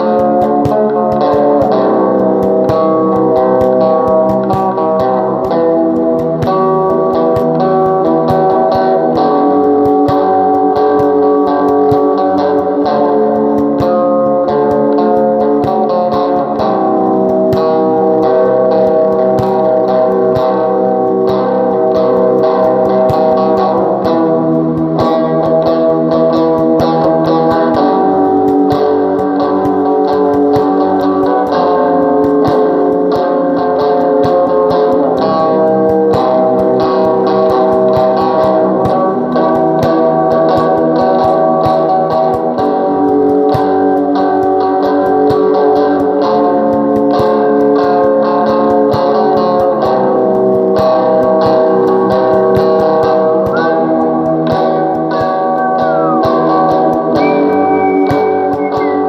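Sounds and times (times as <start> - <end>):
plucked guitar notes and chords: 0.0 - 59.0.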